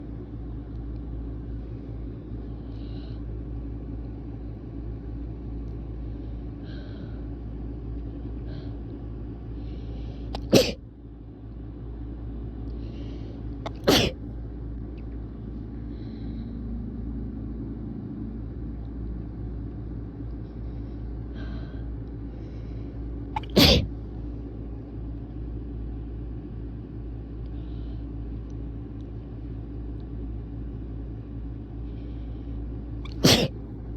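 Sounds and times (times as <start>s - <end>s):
steady low hum: 0.0s - 33.9s
catching breaths: 6.0s - 10.5s, 12.5s - 13.9s, 15.5s - 17.0s, 20.3s - 24.1s, 27.3s - 28.4s, 31.4s - 33.9s
person sneezing: 10.4s - 10.8s, 13.7s - 14.2s, 23.4s - 23.9s, 33.0s - 33.6s.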